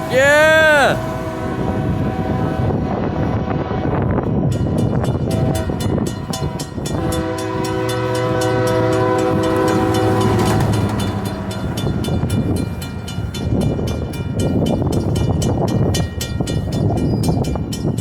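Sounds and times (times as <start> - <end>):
locomotive horn: 0.0 - 4.2, 5.3 - 6.1, 6.9 - 11.5
train wheels clicking on rails: 4.4 - 18.0.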